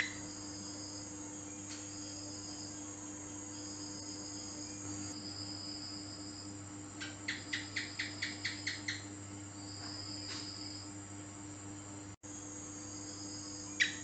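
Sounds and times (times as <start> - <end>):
high insect trill: 0.0 - 14.0
gecko chirps: 7.0 - 9.0, 13.8 - 14.0.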